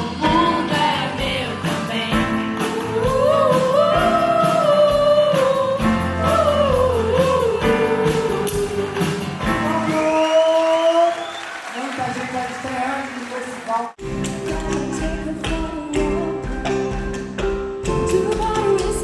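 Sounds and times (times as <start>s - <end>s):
bass: 0.0s - 10.5s, 14.0s - 19.0s
drum beat: 0.2s - 10.4s.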